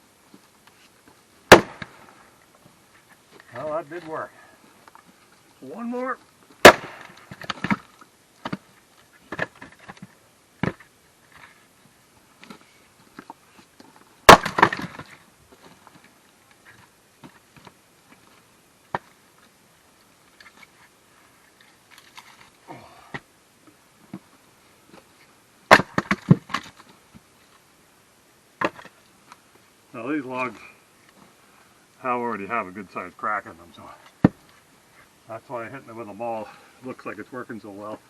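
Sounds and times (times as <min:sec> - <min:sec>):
maul striking firewood: 0:01.5 - 0:02.2, 0:06.6 - 0:08.6, 0:09.3 - 0:10.8, 0:14.2 - 0:15.2, 0:18.9 - 0:19.1, 0:25.7 - 0:26.8, 0:28.6 - 0:29.0, 0:34.1 - 0:34.5
wood cracking and splintering: 0:14.3 - 0:15.2, 0:25.7 - 0:26.9.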